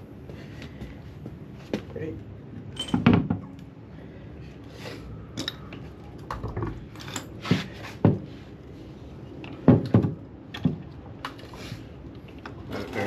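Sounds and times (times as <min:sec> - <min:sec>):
metal tools clinking: 0:02.8 - 0:03.1.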